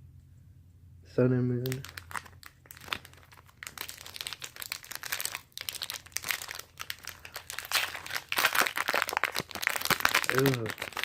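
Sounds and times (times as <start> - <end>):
foil wrapper crinkling: 1.6 - 11.0.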